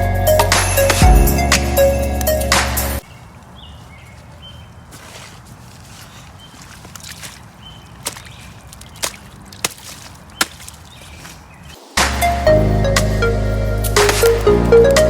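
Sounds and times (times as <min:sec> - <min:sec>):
loud music: 0:00.0 - 0:03.0, 0:12.0 - 0:15.0
faint outdoor background: 0:00.0 - 0:15.0
shovel knocking dirt: 0:08.0 - 0:11.4, 0:14.0 - 0:14.5.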